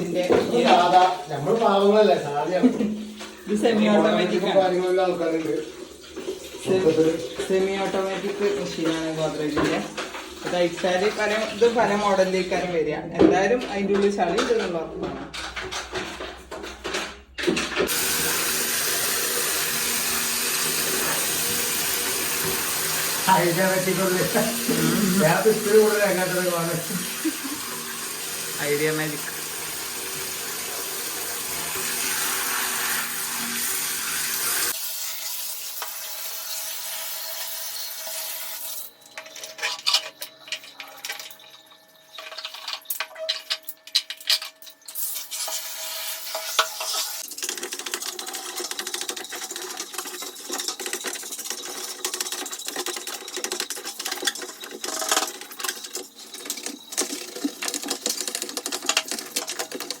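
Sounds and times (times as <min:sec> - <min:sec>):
water running: 0:00.0 - 0:16.6, 0:17.8 - 1:00.0
brush scrubbing plastic: 0:18.0 - 0:28.0, 0:46.3 - 1:00.0.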